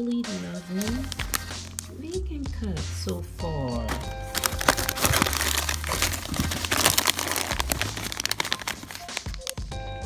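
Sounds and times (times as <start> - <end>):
plastic packaging crinkling: 0.7 - 1.9, 3.9 - 9.7.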